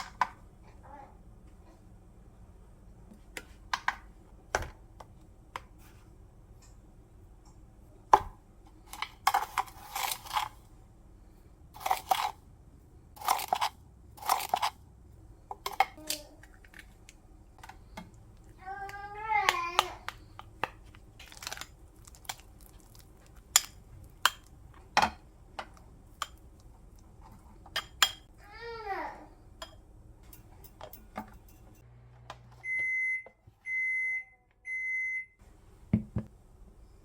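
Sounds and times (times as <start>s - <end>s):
food rustling and scraping: 8.7s - 10.8s, 11.7s - 12.5s, 13.2s - 14.8s, 20.2s - 25.0s.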